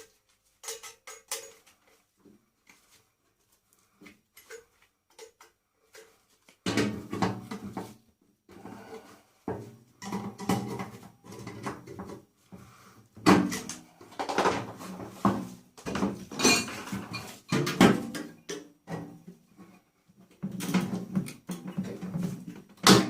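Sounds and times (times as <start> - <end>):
metal parts clanking and rattling: 0.6 - 2.0.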